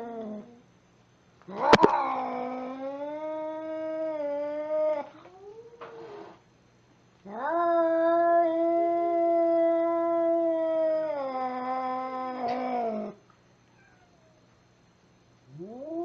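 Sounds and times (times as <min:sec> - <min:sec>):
angry cat yowling: 0:01.5 - 0:06.3, 0:07.3 - 0:13.2.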